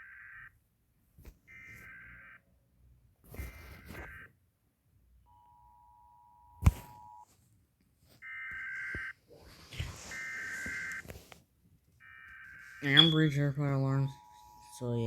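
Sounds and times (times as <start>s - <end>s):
two-tone attention signal: 12.8s - 14.8s.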